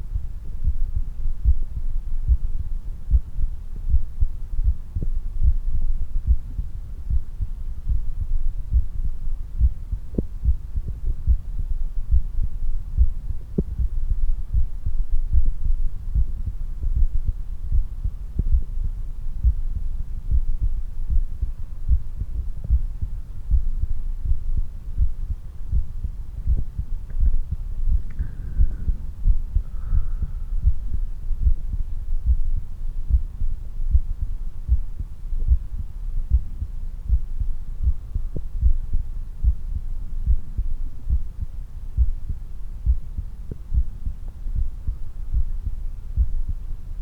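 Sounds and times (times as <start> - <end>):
heartbeat low thumps: 0.0 - 47.0.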